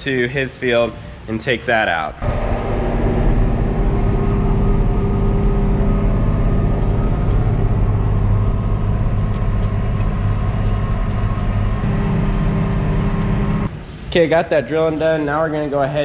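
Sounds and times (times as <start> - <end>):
tractor diesel engine running: 2.2 - 13.7.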